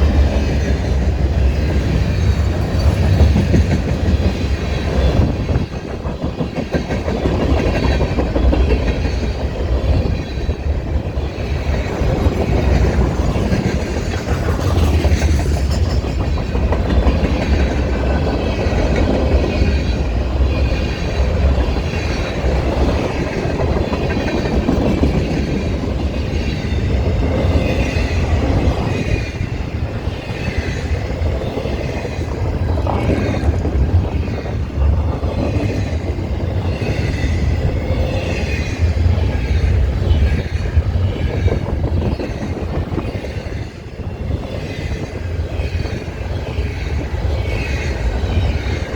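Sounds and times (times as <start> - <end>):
low rumble of train: 0.0 - 48.9
train wheels clicking over rail joints: 0.0 - 48.9
wind buffeting microphone: 0.0 - 48.9.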